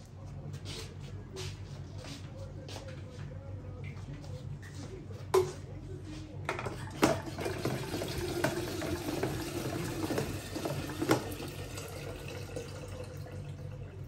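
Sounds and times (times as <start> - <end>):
tap water filling container: 6.6 - 14.0.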